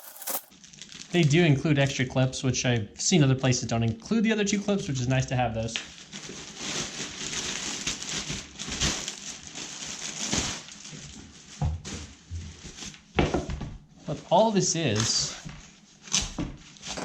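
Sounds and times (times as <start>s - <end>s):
plastic packaging rustling: 0.0s - 1.3s, 5.7s - 13.0s.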